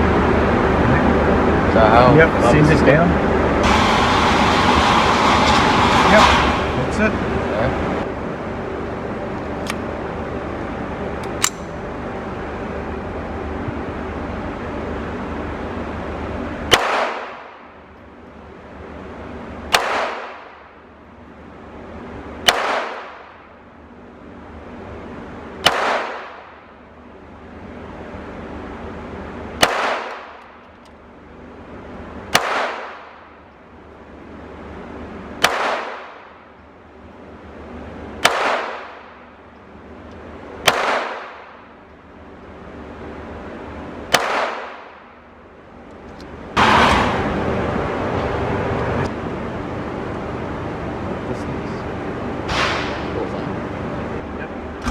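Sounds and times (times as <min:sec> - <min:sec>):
pistol shots with echo: 0:16.7 - 0:17.6, 0:19.7 - 0:20.7, 0:22.4 - 0:23.4, 0:25.6 - 0:26.6, 0:29.6 - 0:30.6, 0:32.3 - 0:33.2, 0:35.4 - 0:36.4, 0:38.2 - 0:39.2, 0:40.6 - 0:41.6, 0:44.1 - 0:45.0, 0:52.5 - 0:53.1.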